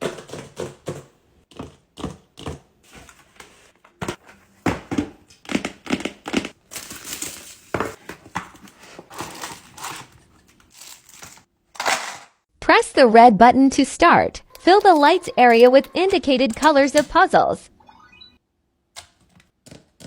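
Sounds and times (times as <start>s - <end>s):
paper crinkling and rustling: 2.8s - 4.7s, 6.6s - 11.5s.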